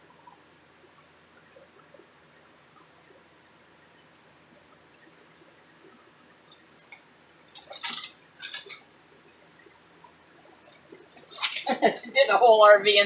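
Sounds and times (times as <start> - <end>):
floor tiles rustling and scraping: 6.8 - 8.9.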